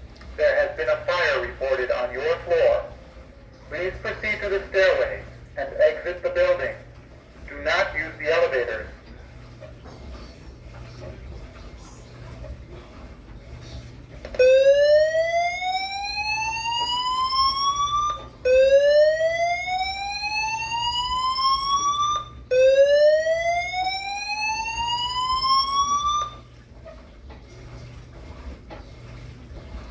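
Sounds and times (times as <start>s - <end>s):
fire alarm whoop tone: 14.4s - 26.5s.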